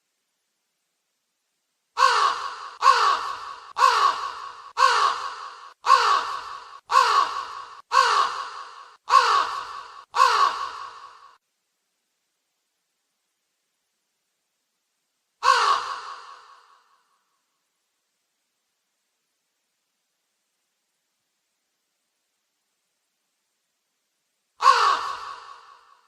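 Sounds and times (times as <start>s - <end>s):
crow cawing: 2.0s - 11.4s, 15.4s - 17.2s, 24.6s - 26.0s.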